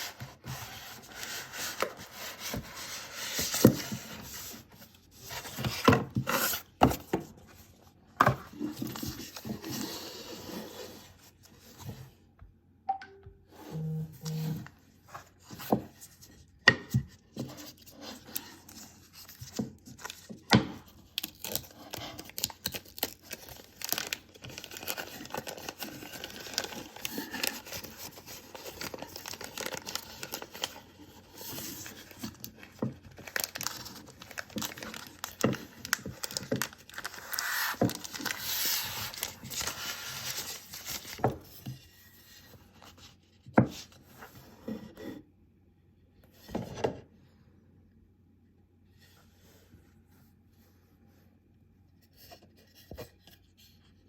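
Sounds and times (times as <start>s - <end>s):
plastic and paper wrapping rustling: 17.3s - 43.0s.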